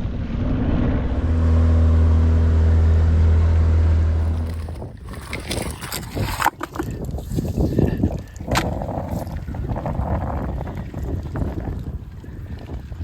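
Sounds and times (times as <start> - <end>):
crackles and knocks: 4.2 - 7.5.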